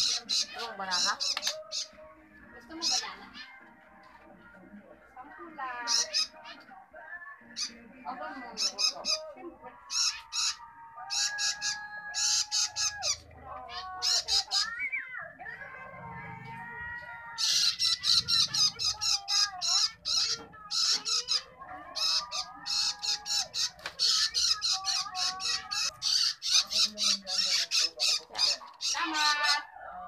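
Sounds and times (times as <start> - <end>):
young birds begging calls: 0.0 - 2.0, 2.7 - 3.6, 5.8 - 6.7, 8.5 - 15.0, 17.2 - 29.7.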